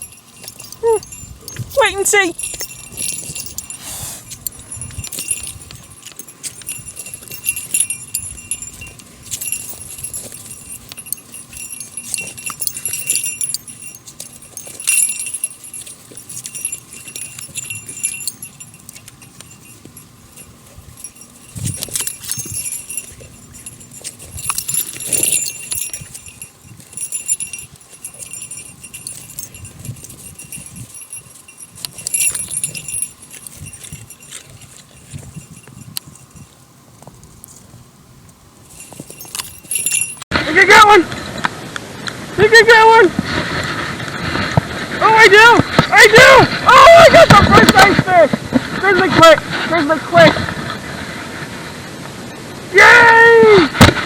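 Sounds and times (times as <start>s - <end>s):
dog collar tags jingling: 0.0s - 37.7s, 38.6s - 41.0s, 45.0s - 48.1s.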